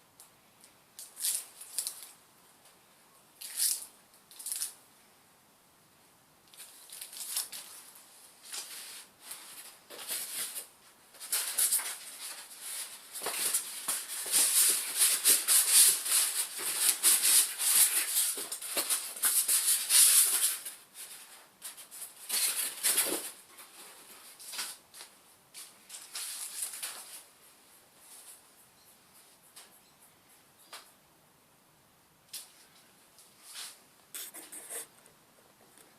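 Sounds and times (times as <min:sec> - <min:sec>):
packaging rustling and crinkling: 0:06.6 - 0:25.1.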